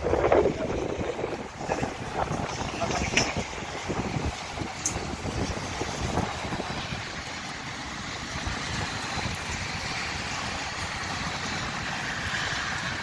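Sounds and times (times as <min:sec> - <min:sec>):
steady rain falling: 0:00.0 - 0:13.0
wind buffeting microphone: 0:00.0 - 0:13.0.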